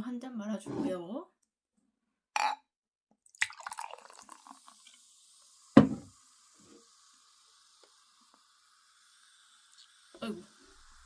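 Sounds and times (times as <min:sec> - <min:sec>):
drink pouring into glass: 0:03.3 - 0:11.0
faint fizz of carbonated drink: 0:03.3 - 0:11.0
glass set down with knock: 0:05.8 - 0:06.1.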